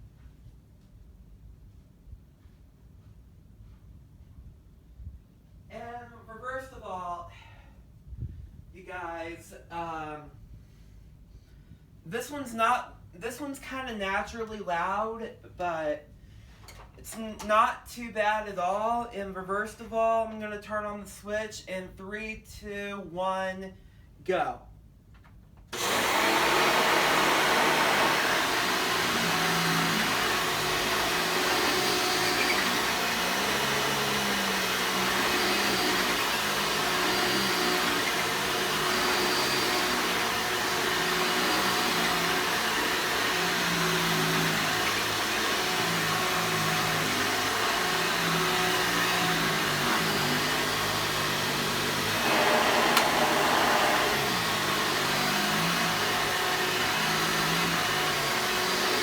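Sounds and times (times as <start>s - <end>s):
upright vacuum cleaner whirring: 25.7s - 59.0s.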